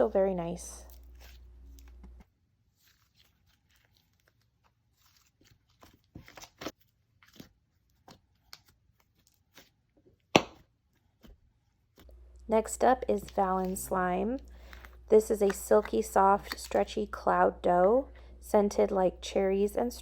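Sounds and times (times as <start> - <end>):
slime squishing and crackling: 2.6 - 9.8.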